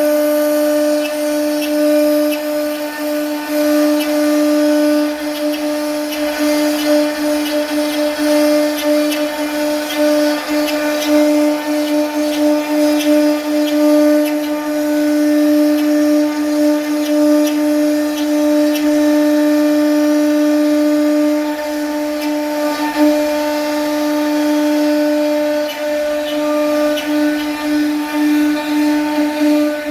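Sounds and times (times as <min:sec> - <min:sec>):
router spindle whine: 0:00.0 - 0:29.9.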